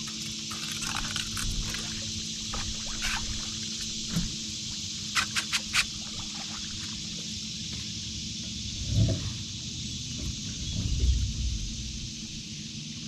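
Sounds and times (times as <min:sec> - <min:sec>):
boat motor humming: 0:00.0 - 0:13.0
wind and water hiss: 0:00.0 - 0:13.0
quick sharp clicks: 0:05.1 - 0:05.9.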